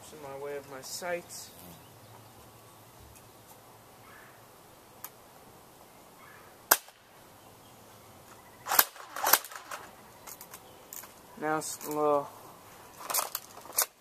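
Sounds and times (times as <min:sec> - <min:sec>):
airsoft gun snapping shots: 0:06.7 - 0:07.0, 0:08.7 - 0:09.9.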